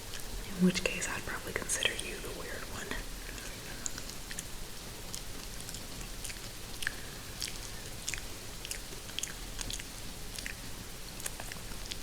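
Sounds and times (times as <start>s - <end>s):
mouth and chewing clicks: 0.0s - 0.9s, 3.3s - 12.0s.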